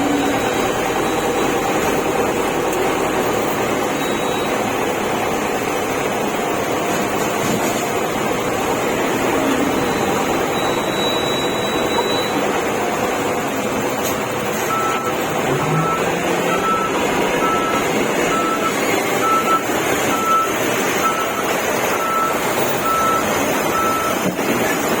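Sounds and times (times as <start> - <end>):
reversing alarm beeping: 0.0 - 2.2, 3.8 - 4.9, 8.5 - 13.8, 14.4 - 24.3
heavy equipment engine running: 0.0 - 25.0.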